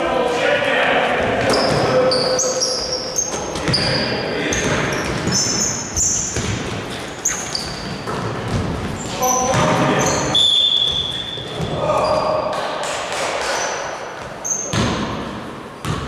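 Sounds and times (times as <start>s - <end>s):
sneakers squeaking on floor: 1.1s - 12.5s, 13.4s - 16.0s
basketball bouncing: 4.6s - 10.2s, 14.2s - 16.0s.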